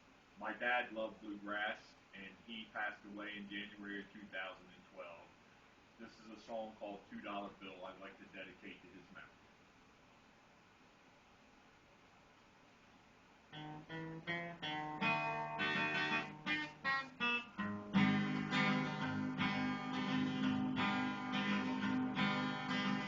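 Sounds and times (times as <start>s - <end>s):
acoustic guitar picking and strumming: 13.5s - 23.0s.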